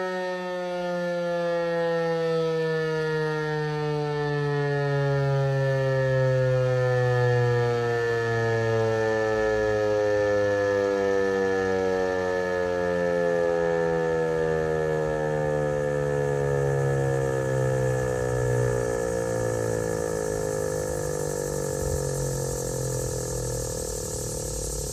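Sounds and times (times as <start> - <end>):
warning siren winding down: 0.0 - 24.9
steady low hum: 16.0 - 24.9.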